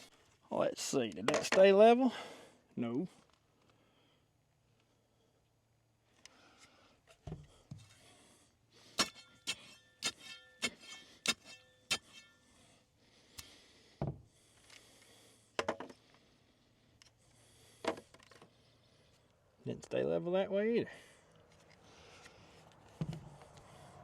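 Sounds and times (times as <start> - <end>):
dirt scraping: 9.0 - 12.4
metal tool striking post: 9.0 - 12.4.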